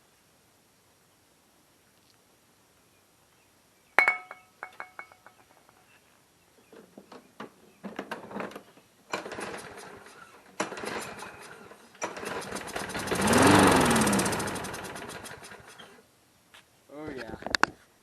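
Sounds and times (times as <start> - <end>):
mower engine pull-start cranking: 7.9 - 16.0
mower engine revving and dying: 8.5 - 16.0.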